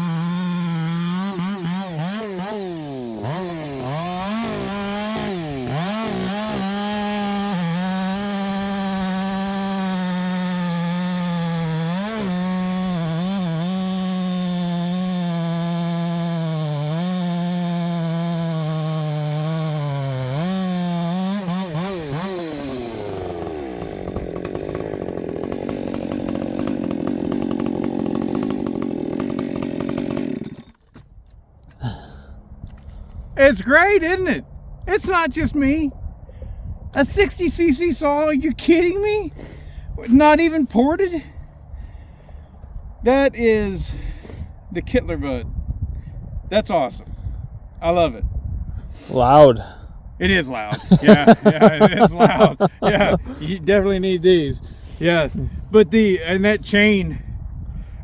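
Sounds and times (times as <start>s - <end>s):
chainsaw cutting wood: 0.0s - 32.1s, 38.7s - 42.4s, 50.7s - 57.0s.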